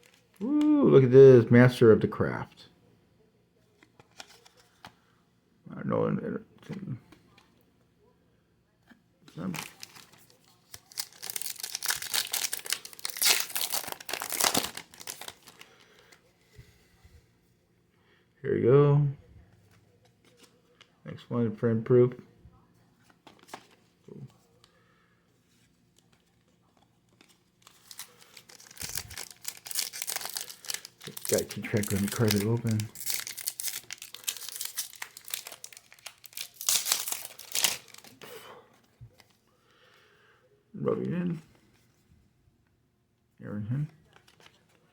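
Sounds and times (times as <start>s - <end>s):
plastic wrapper crinkling: 9.3s - 16.2s, 27.1s - 38.4s.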